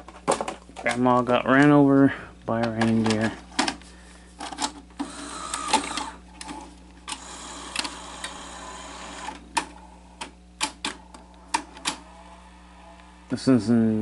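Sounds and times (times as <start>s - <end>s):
tape mechanism whirring: 4.4s - 14.0s
sharp mechanical clicks: 5.0s - 9.7s.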